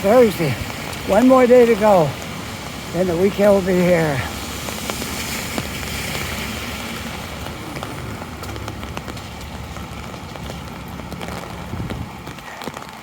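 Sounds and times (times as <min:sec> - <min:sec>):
heavy rain on an umbrella: 0:00.0 - 0:13.0
low wind rumble: 0:00.0 - 0:13.0.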